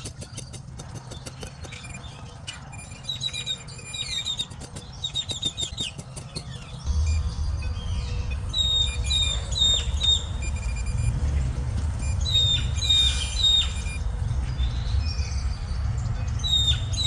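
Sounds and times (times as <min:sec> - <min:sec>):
bird calling high notes: 0:06.6 - 0:14.3
low rumble: 0:06.9 - 0:12.8.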